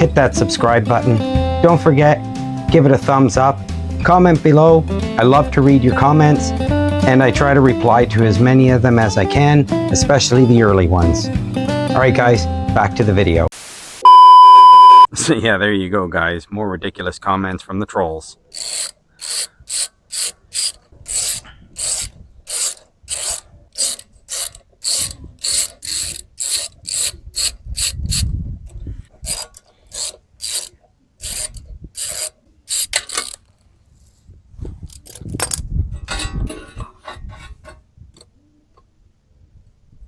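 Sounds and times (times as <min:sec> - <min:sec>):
ratchet clicking: 0:18.5 - 0:28.4, 0:29.1 - 0:33.6, 0:34.9 - 0:36.3.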